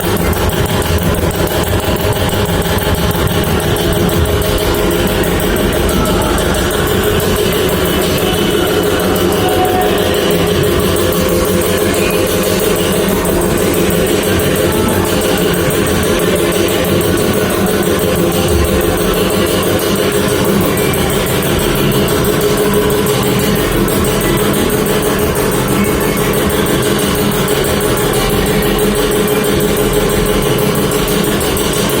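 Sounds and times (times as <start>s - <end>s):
background music: 0.0s - 32.0s.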